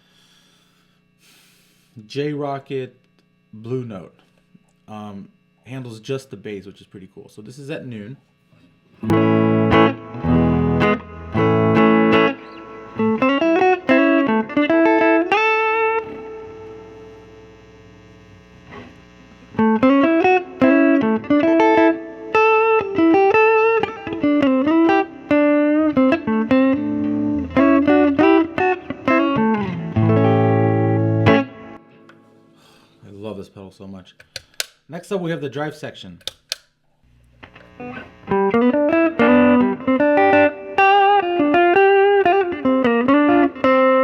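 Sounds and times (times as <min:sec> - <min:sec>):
electric guitar playing: 0:09.0 - 0:32.8, 0:37.4 - 0:44.0.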